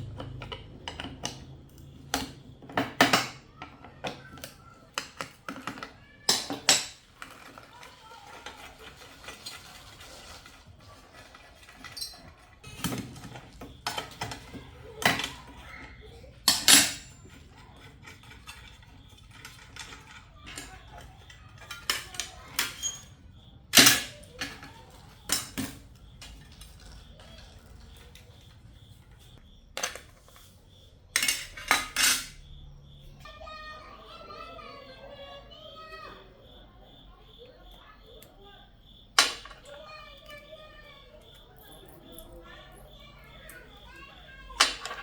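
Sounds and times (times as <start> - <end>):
metal tools clinking: 5.0 - 32.5, 39.2 - 45.0.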